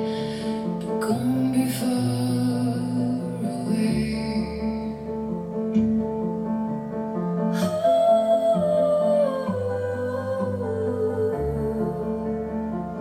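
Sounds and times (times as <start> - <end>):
woman singing: 0.0 - 5.1, 7.5 - 12.8
slow music over loudspeakers: 0.0 - 13.0.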